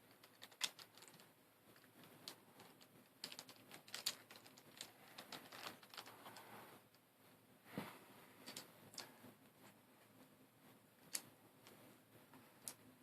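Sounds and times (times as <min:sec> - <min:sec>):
plastic puzzle pieces clicking: 0:00.1 - 0:06.4, 0:08.4 - 0:09.1, 0:11.0 - 0:11.8.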